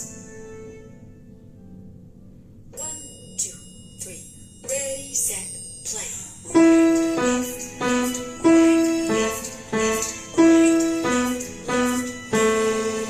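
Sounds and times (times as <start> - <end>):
piano playing simple melody: 0.0 - 2.9, 6.4 - 13.0.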